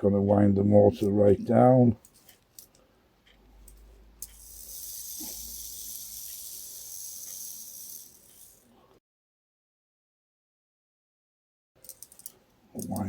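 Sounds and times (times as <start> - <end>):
clockwork motor whirring: 4.2 - 8.7.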